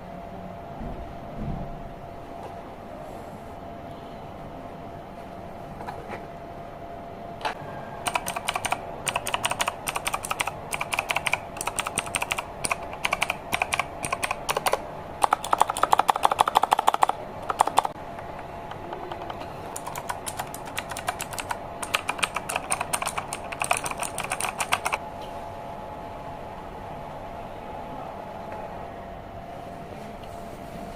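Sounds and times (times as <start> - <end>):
faint steady hum: 0.0 - 30.9
keyboard key clicks: 8.1 - 25.0.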